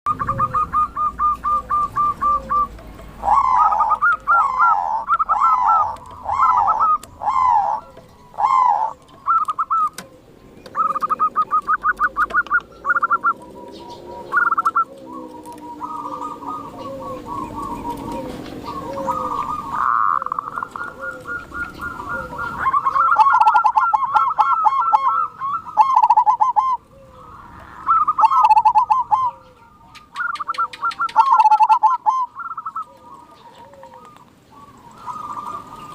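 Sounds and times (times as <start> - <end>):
birds chirping: 0.1 - 35.9
doves cooing: 0.1 - 35.9.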